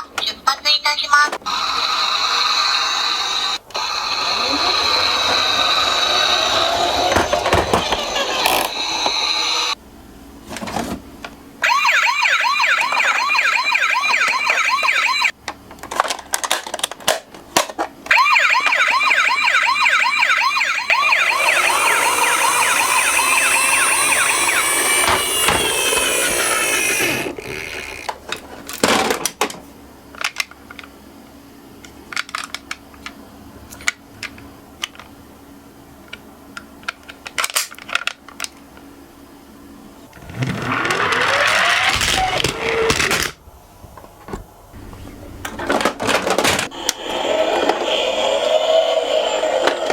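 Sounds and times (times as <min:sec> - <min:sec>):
toy electronic siren: 0:01.5 - 0:09.8, 0:11.6 - 0:15.3, 0:18.1 - 0:27.4, 0:40.5 - 0:42.9, 0:46.8 - 0:49.9.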